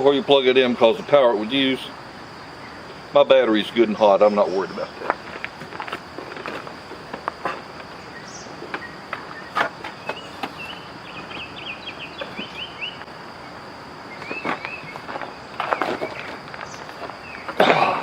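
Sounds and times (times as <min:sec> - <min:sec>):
high insect buzz: 0:00.0 - 0:18.0
bird twittering: 0:07.9 - 0:13.1, 0:14.1 - 0:17.5.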